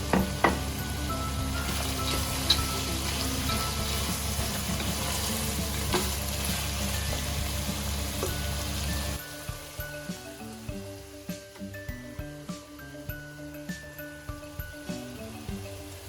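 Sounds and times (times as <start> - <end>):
food sizzling in a pan: 0.0 - 16.0.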